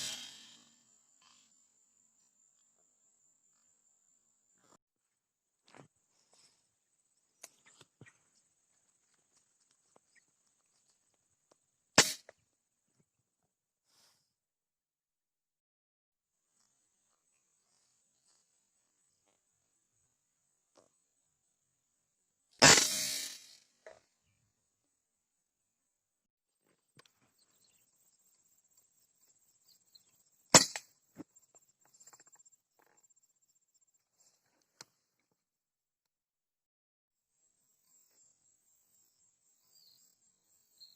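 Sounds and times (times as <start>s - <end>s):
air gun shot: 0.0s - 0.7s, 12.0s - 12.2s, 22.6s - 23.6s.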